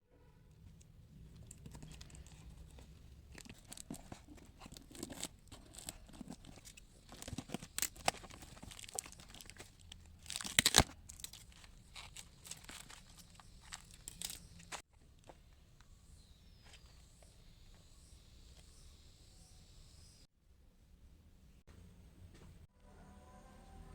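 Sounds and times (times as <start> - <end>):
packaging being torn and crinkled: 3.3 - 14.8.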